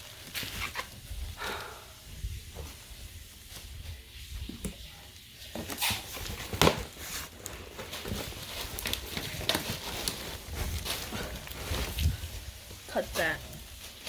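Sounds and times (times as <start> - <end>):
packaging crinkling and tearing: 0.0 - 1.0, 5.6 - 14.0.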